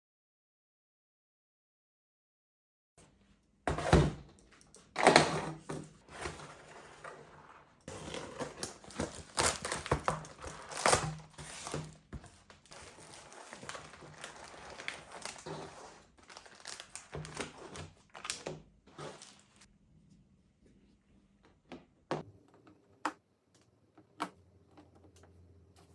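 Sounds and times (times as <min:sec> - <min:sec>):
plastic packaging crinkling: 0:07.9 - 0:19.7.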